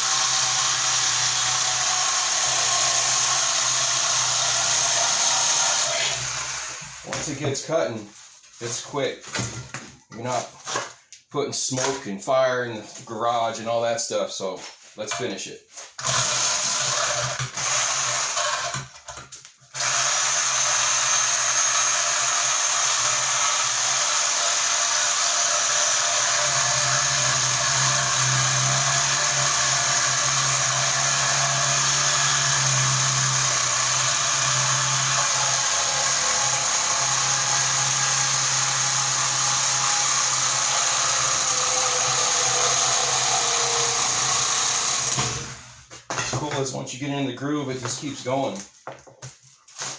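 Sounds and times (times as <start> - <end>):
reciprocating saw cutting metal: 0.0 - 7.5, 19.8 - 46.4.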